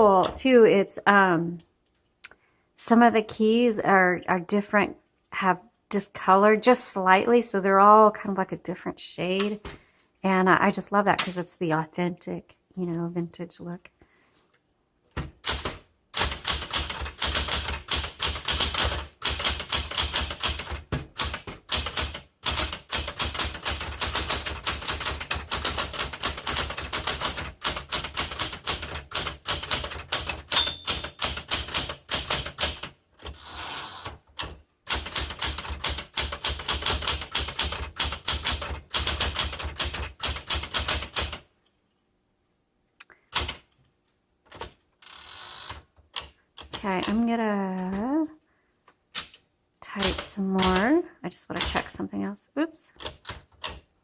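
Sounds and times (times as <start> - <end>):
manual typewriter typing: 15.2 - 41.5, 43.3 - 43.7, 49.1 - 51.0, 51.6 - 52.0, 53.0 - 53.9.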